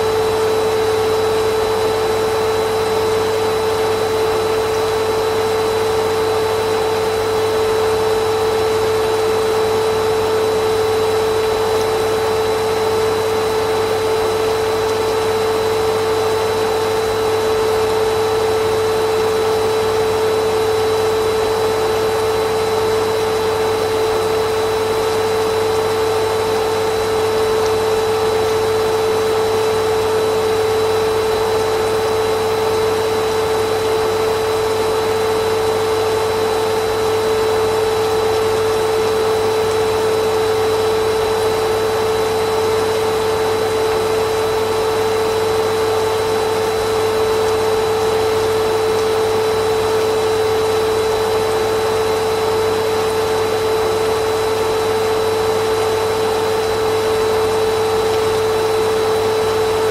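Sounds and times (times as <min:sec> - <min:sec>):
vacuum cleaner running: 0:00.0 - 0:59.9.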